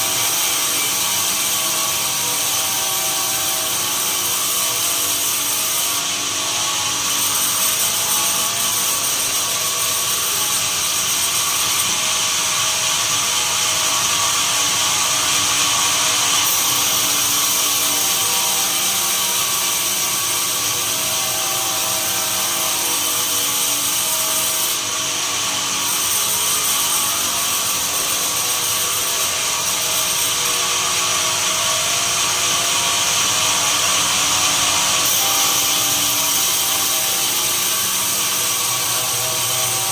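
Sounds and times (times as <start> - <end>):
saw cutting wood whine: 0.0 - 39.9
sawmill machinery drone: 0.0 - 39.9.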